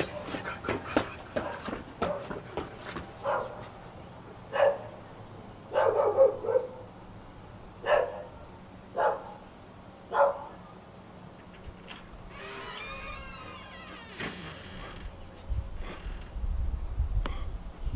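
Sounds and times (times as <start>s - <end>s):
dog barking: 1.4s - 2.4s, 3.2s - 3.7s, 4.5s - 5.0s, 5.7s - 6.9s, 7.8s - 8.4s, 9.0s - 9.4s, 10.1s - 10.6s.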